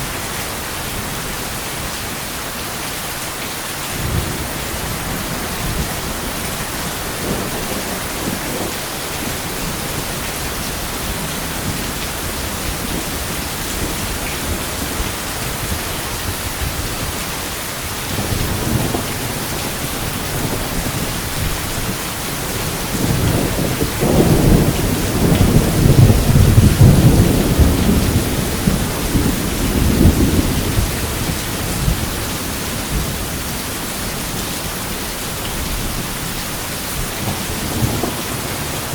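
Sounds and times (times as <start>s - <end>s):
heavy rain: 0.0s - 38.9s
thunder rumbling: 3.9s - 38.9s.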